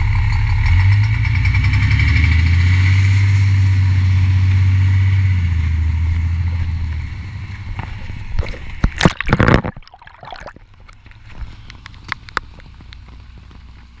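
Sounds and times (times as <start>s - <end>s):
diesel engine idling with knock: 0.0s - 4.7s, 10.8s - 14.0s
loud rustling and sloshing: 7.9s - 10.6s.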